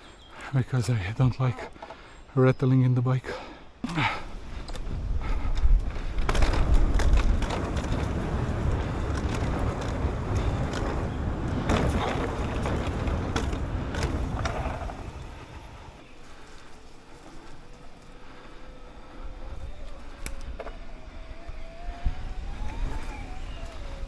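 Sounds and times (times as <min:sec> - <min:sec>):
bike clattering and rattling: 0:03.9 - 0:24.0
wind buffeting microphone: 0:04.0 - 0:24.0.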